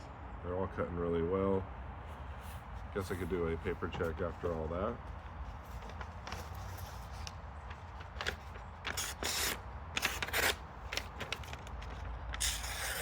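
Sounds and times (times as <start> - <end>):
knife blade slicing paper: 8.2 - 13.0.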